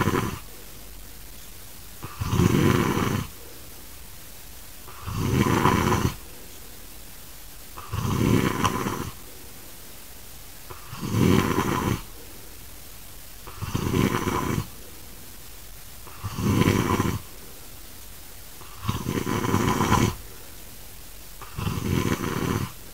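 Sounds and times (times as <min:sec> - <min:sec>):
man snoring heavily: 0:00.0 - 0:00.5, 0:02.0 - 0:03.4, 0:04.9 - 0:06.2, 0:07.8 - 0:09.2, 0:10.7 - 0:12.1, 0:13.5 - 0:14.8, 0:16.1 - 0:17.3, 0:18.6 - 0:20.2, 0:21.4 - 0:22.9.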